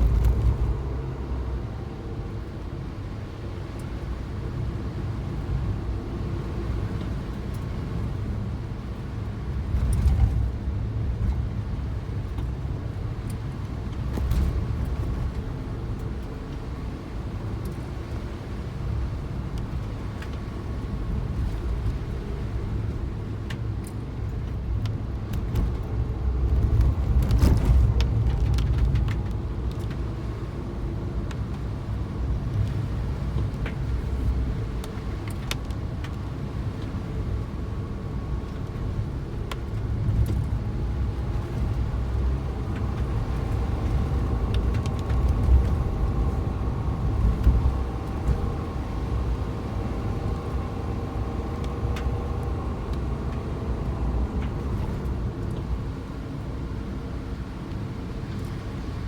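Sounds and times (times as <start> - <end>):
vehicle engine and road noise: 0.0 - 59.0
light clicks and rattles: 23.4 - 30.1, 31.2 - 37.3.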